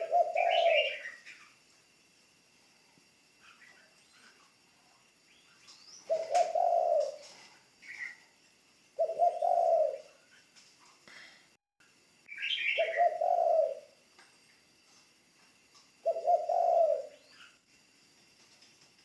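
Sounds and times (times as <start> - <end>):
dove cooing: 0.0 - 1.5, 5.9 - 8.3, 9.0 - 10.4, 12.4 - 14.0, 16.0 - 17.6
high bird chirp: 12.3 - 13.7.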